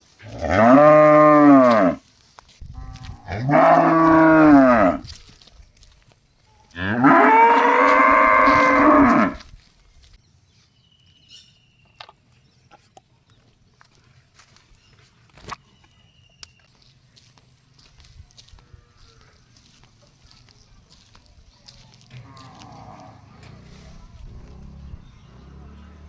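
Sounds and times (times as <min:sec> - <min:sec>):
cow mooing: 0:00.3 - 0:02.0, 0:02.8 - 0:05.0, 0:06.8 - 0:09.4, 0:22.2 - 0:23.5.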